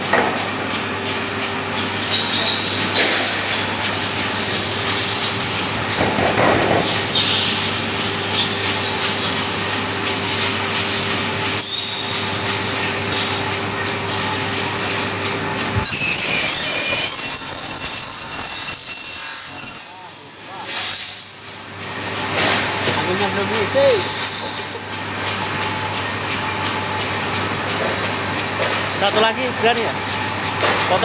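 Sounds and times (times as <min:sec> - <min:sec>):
metal-cutting saw humming: 0:11.3 - 0:20.5
saw blade screeching through metal: 0:11.6 - 0:12.2, 0:15.8 - 0:21.2.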